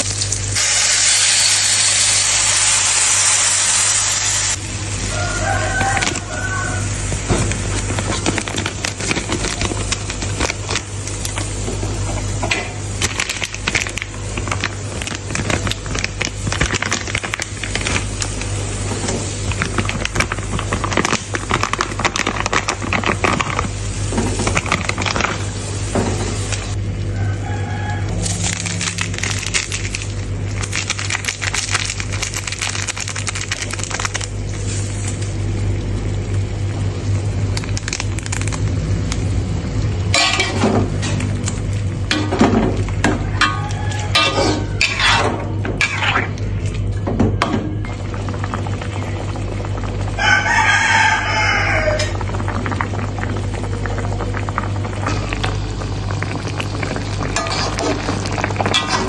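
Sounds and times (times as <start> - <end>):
food crackling in a pan: 0.0 - 27.2, 28.2 - 59.0
steady low hum: 4.5 - 59.0.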